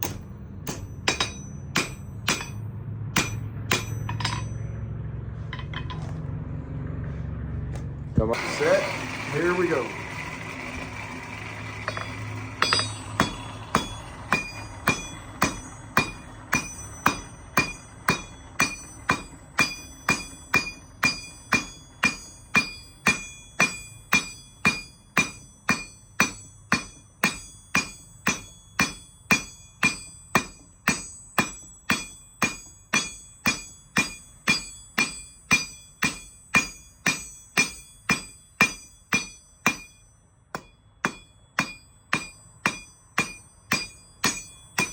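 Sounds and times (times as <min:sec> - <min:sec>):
hammer striking hot steel: 0:00.0 - 0:04.7, 0:11.7 - 0:44.9
anvil ringing: 0:00.0 - 0:06.2, 0:11.3 - 0:44.9.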